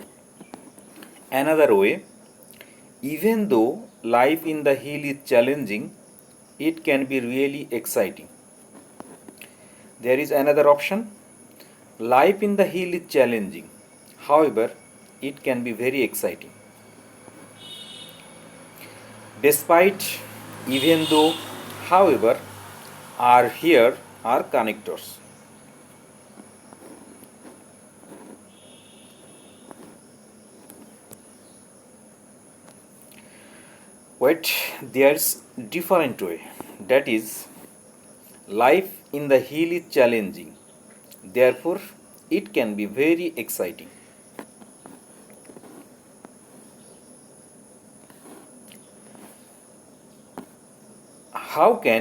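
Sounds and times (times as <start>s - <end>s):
steady low hiss: 0.0s - 52.0s
thin high whine: 12.0s - 22.5s, 23.2s - 39.8s.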